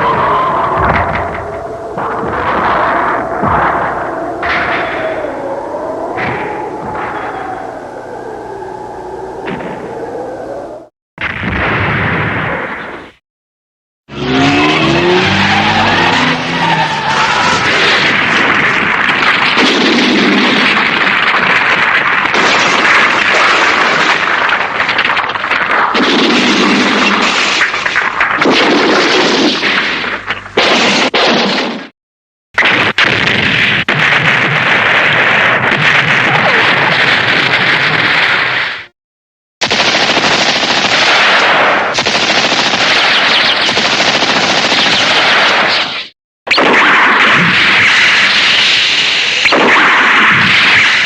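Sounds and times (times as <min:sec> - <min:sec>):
crackle of explosion blasts: 0:00.0 - 0:10.0, 0:10.8 - 0:13.2, 0:14.4 - 0:31.9, 0:32.6 - 0:38.9, 0:39.6 - 0:51.0
rapid machine-gun fire: 0:17.5 - 0:31.9, 0:32.6 - 0:38.9, 0:39.6 - 0:51.0.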